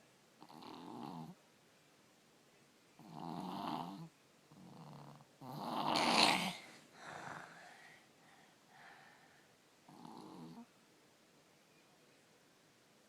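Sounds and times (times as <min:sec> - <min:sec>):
child snoring: 0:00.4 - 0:01.4, 0:03.0 - 0:08.0, 0:09.9 - 0:10.7.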